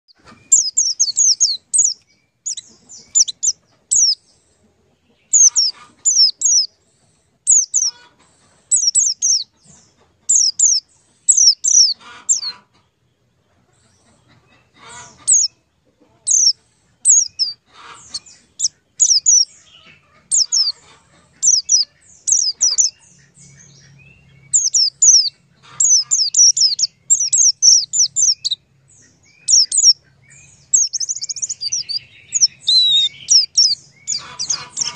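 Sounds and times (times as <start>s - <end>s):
small bird chirping: 0.1s - 34.9s.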